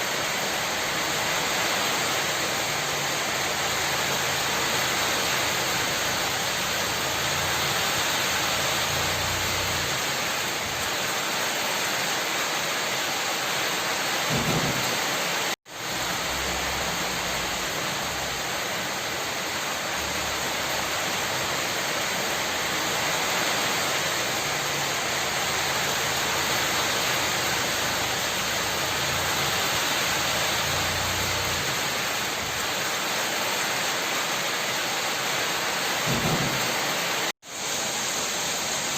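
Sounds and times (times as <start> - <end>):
steady rain hissing: 0.0 - 38.9
thunder rumbling: 36.1 - 37.0.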